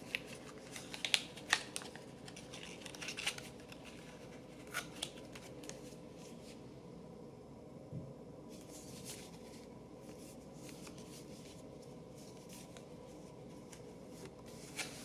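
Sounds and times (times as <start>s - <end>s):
low room hiss: 0.0s - 15.0s
cards sliding and being laid down: 13.6s - 15.0s.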